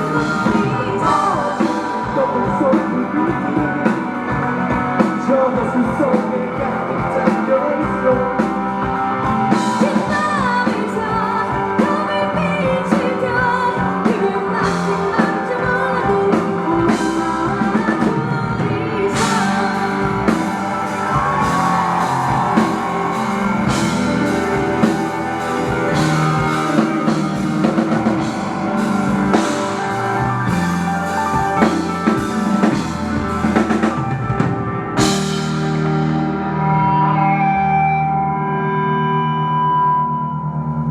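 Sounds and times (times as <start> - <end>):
lead singer: 0.0 - 39.9
rock band playing: 0.0 - 40.2
drum and cymbal hits: 19.2 - 36.3.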